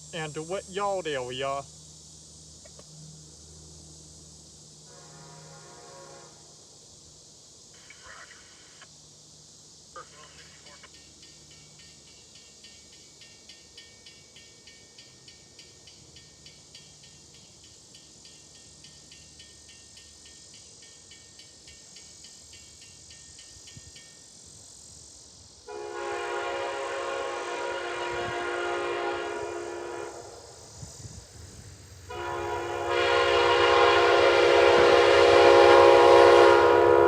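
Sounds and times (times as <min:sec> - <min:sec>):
train horn blast: 0:04.8 - 0:06.6, 0:25.7 - 0:30.4, 0:32.1 - 0:37.0.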